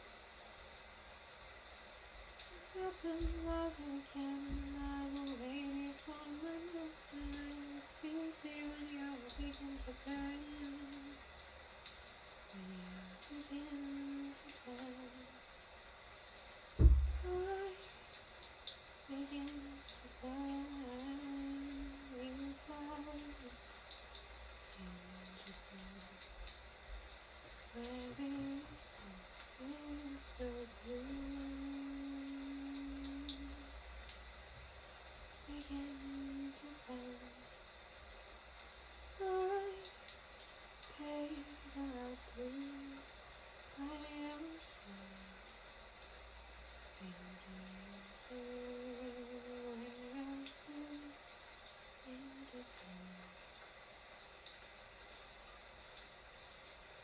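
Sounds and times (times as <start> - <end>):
woman humming a melody: 2.6 - 11.2, 12.5 - 15.4, 16.8 - 18.0, 19.1 - 23.6, 24.8 - 26.2, 27.8 - 33.7, 35.5 - 37.4, 39.2 - 39.9, 47.0 - 51.2, 52.1 - 53.3.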